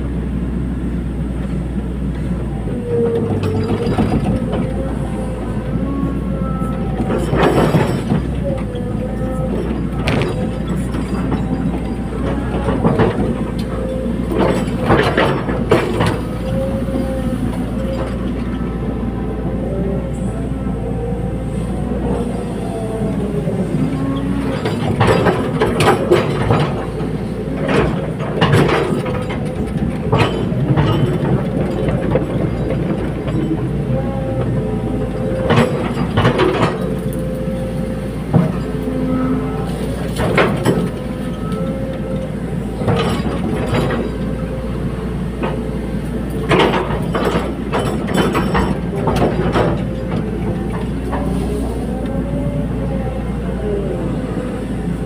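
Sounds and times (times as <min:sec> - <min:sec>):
excavator diesel engine: 0:00.0 - 0:55.0
hydraulic whine: 0:02.1 - 0:55.0
metallic clanks and rattles: 0:06.9 - 0:16.7, 0:24.3 - 0:33.9, 0:35.0 - 0:37.4, 0:39.7 - 0:44.5, 0:45.3 - 0:51.3.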